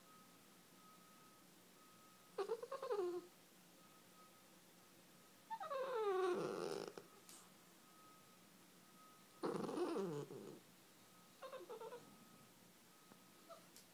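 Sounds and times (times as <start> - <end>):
puppy calling: 2.4 - 3.3, 5.5 - 7.0, 9.4 - 10.6, 11.4 - 12.1.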